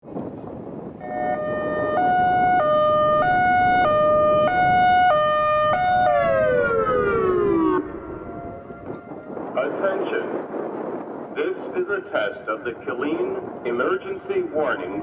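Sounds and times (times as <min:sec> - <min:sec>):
hi-lo warning siren: 0:01.0 - 0:09.6, 0:14.4 - 0:15.0.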